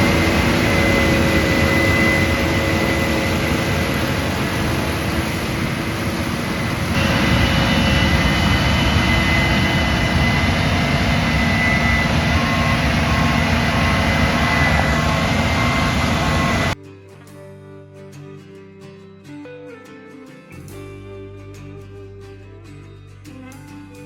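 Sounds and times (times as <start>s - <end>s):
combine harvester din: 0.0s - 16.8s
high machine whine: 0.0s - 16.8s.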